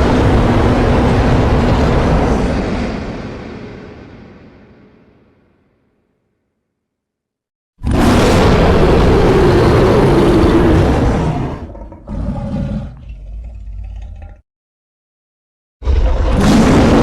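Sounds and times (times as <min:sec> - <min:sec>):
monster roar: 0:07.8 - 0:14.2, 0:15.8 - 0:17.0
monster growl: 0:07.8 - 0:14.4, 0:15.8 - 0:17.0.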